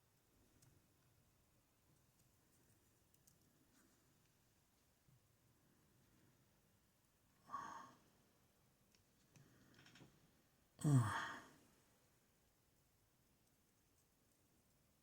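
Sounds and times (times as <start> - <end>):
man sighing heavily: 10.8 - 11.6.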